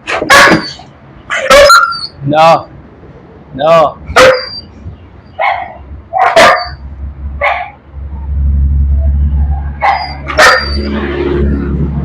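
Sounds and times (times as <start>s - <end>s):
dog barking: 0.2s - 2.0s, 4.2s - 4.6s, 5.4s - 6.8s, 7.4s - 7.8s, 9.8s - 10.9s.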